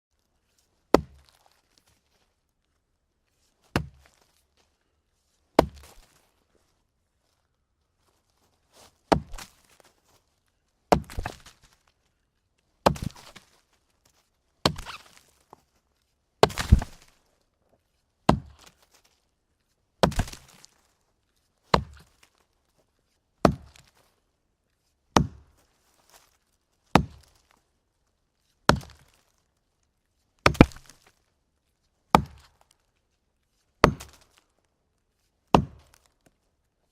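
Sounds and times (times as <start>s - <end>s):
axe chopping wood: 0.9s - 1.4s, 3.7s - 4.1s, 5.6s - 6.2s, 9.1s - 9.7s, 10.9s - 11.6s, 12.8s - 13.4s, 14.6s - 15.2s, 16.4s - 17.1s, 18.3s - 18.8s, 20.0s - 20.7s, 21.7s - 22.1s, 23.4s - 23.9s, 25.2s - 25.5s, 26.9s - 27.4s, 28.7s - 29.2s, 30.4s - 31.1s, 32.1s - 32.5s, 33.8s - 34.4s, 35.5s - 36.1s.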